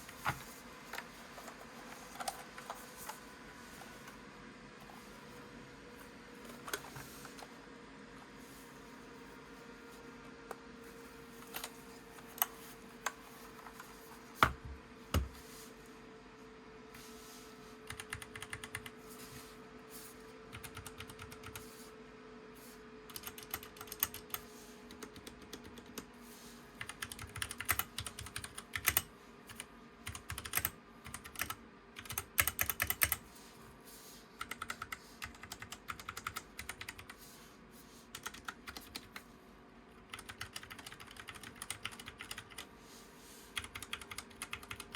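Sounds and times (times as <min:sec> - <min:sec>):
mechanical keyboard typing: 0:17.9 - 0:18.9, 0:20.5 - 0:21.6, 0:23.1 - 0:26.1, 0:26.8 - 0:33.2, 0:34.4 - 0:37.2, 0:38.1 - 0:39.2, 0:40.1 - 0:42.7, 0:43.6 - 0:44.9.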